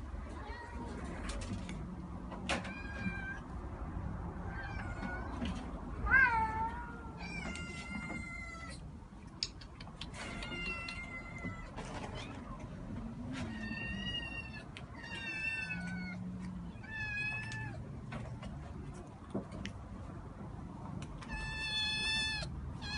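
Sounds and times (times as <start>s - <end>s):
cat meowing: 4.5s - 5.4s, 6.0s - 8.8s, 10.2s - 12.5s, 13.4s - 17.8s, 21.2s - 22.9s.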